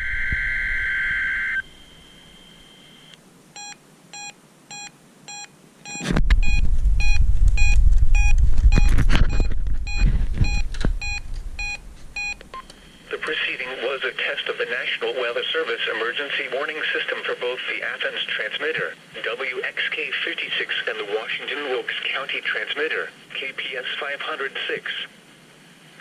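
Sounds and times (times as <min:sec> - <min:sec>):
electronic alert beeps: 0:03.6 - 0:12.7
loud low rumble: 0:06.1 - 0:12.2.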